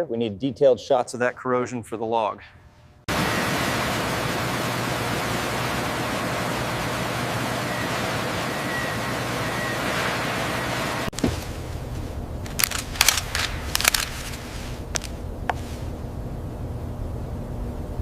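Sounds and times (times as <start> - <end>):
steady rushing hiss: 11.0 - 16.2.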